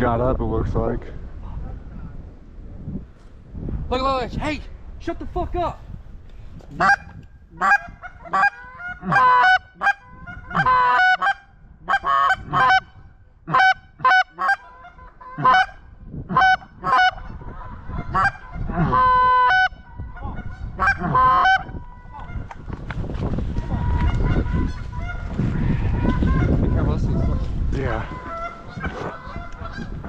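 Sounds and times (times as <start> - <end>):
goose honking: 6.8 - 12.9, 13.5 - 19.8, 20.4 - 22.5, 28.0 - 30.0.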